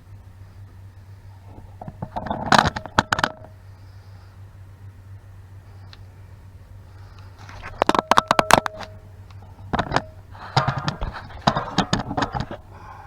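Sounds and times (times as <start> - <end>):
steady low hum: 0.0 - 13.0
metal tools clanking: 7.6 - 13.0.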